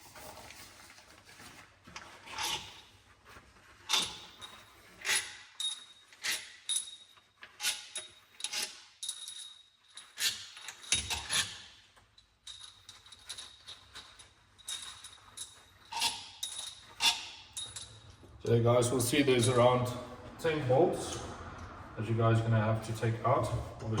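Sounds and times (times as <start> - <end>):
metal tools clinking and knocking: 3.9 - 18.4.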